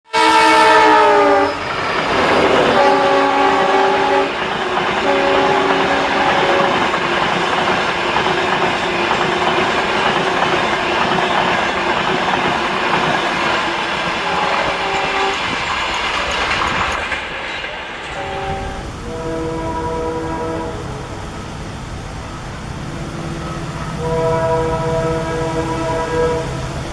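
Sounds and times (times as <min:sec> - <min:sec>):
train horn blasts: 0:00.1 - 0:07.0, 0:14.2 - 0:15.6, 0:18.0 - 0:26.9
train rumble and wheel clatter: 0:00.2 - 0:26.9.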